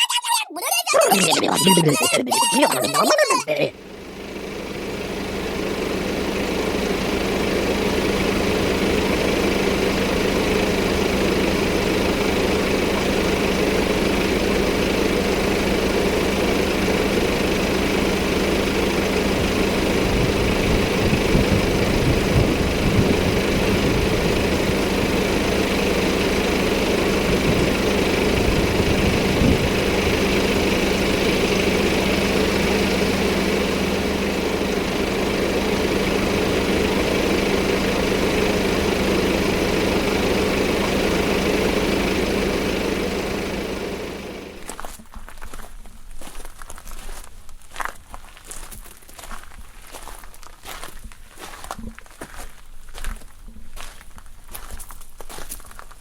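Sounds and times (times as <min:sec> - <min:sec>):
engine idling: 0:01.0 - 0:45.0.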